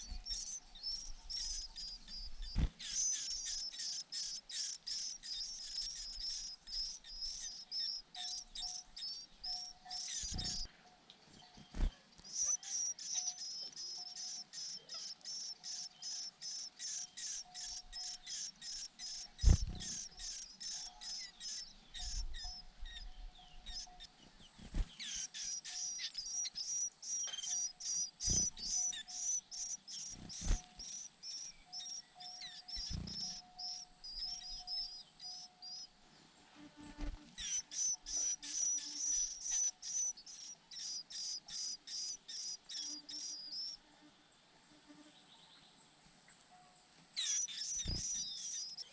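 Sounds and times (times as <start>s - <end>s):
birds chirping rapidly: 0.0s - 36.0s, 36.9s - 43.8s, 47.2s - 48.9s.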